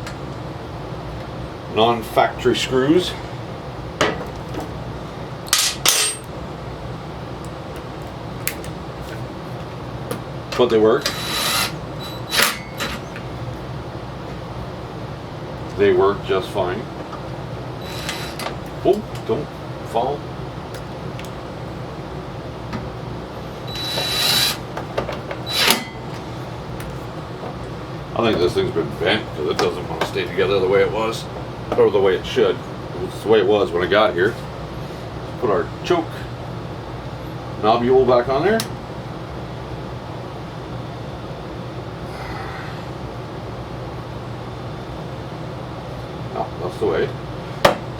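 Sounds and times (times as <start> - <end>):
steady background hum: 0.0 - 47.9
metal tools clattering: 5.5 - 6.3
tool scraping and whirring: 11.0 - 13.0, 17.8 - 18.5, 23.7 - 24.7, 25.4 - 26.0.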